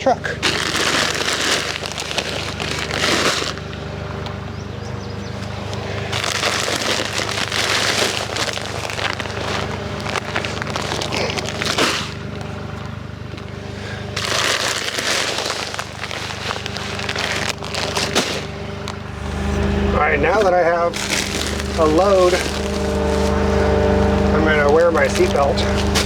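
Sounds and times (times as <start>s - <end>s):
engine running steadily: 0.0s - 26.0s
dense crackling noise: 5.4s - 12.5s, 14.2s - 19.0s, 20.2s - 26.0s.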